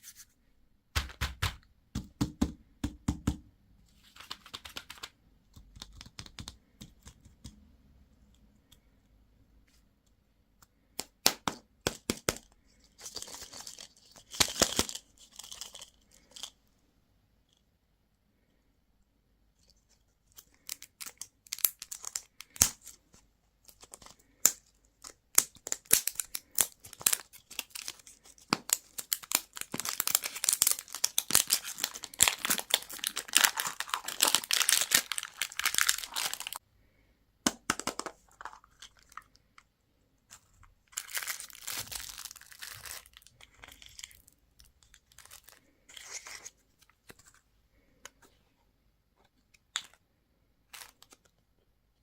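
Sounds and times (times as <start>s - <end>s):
candy wrappers crinkling: 12.2s - 16.6s, 20.2s - 36.6s, 37.8s - 39.6s, 40.3s - 47.9s, 50.6s - 51.4s.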